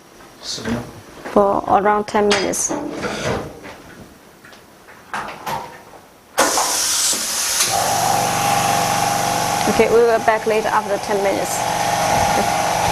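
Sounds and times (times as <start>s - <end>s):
loud rush of air: 6.4s - 12.9s
motor humming: 7.4s - 12.9s.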